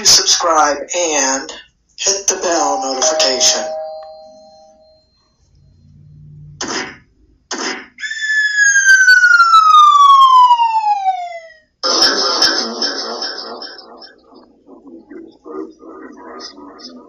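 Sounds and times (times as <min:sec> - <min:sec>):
two-note chime: 0:02.6 - 0:06.5
falling whistle tone: 0:08.0 - 0:11.5.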